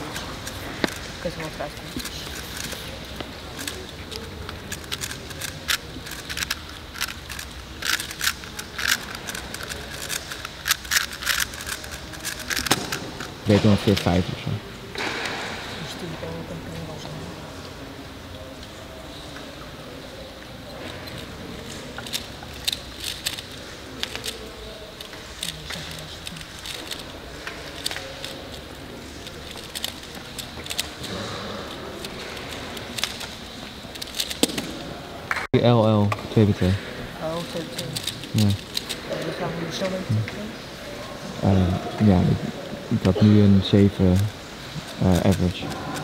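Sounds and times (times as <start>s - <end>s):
puzzle cube plastic clicks: 0.0s - 14.2s, 20.6s - 34.8s, 37.4s - 39.4s, 43.8s - 46.0s.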